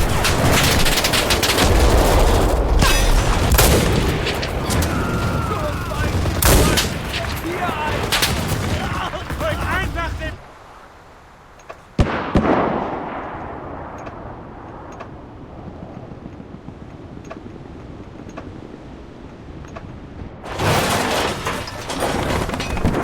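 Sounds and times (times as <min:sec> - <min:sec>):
gunshots: 0:00.0 - 0:10.5, 0:12.0 - 0:14.5
rumble: 0:00.0 - 0:10.5, 0:12.0 - 0:23.0
dense battle noise: 0:00.0 - 0:10.7, 0:20.4 - 0:23.0
explosion blast: 0:01.6 - 0:10.4.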